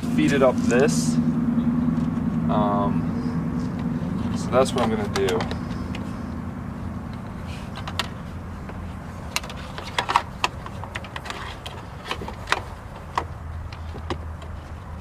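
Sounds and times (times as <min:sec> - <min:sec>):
steady low hum: 0:00.0 - 0:15.0
plastic parts clicking and tapping: 0:07.8 - 0:14.7.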